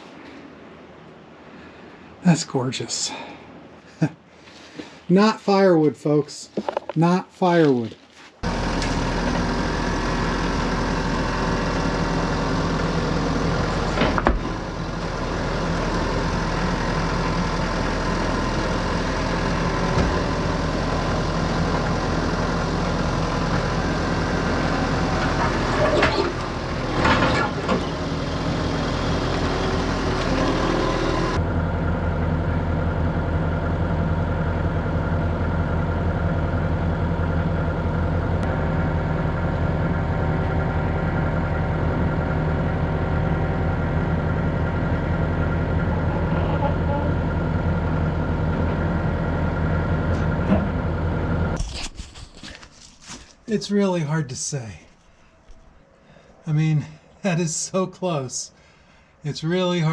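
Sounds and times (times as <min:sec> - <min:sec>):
sawmill engine running: 0:08.4 - 0:51.6.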